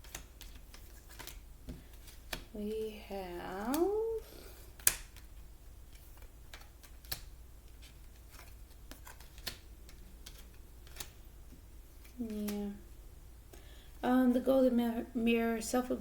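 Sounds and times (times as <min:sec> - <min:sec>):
cards clicking and tapping: 0:00.0 - 0:03.0, 0:03.6 - 0:04.0, 0:04.7 - 0:12.7.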